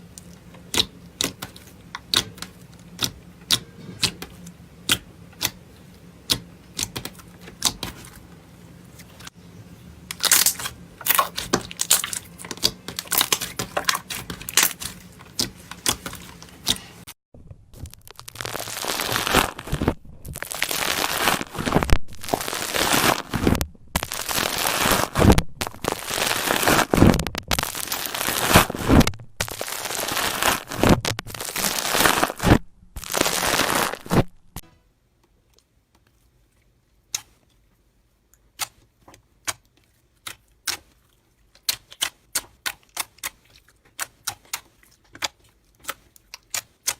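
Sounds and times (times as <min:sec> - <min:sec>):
slime squishing: 0:00.2 - 0:09.3, 0:10.1 - 0:17.1, 0:35.4 - 0:46.9.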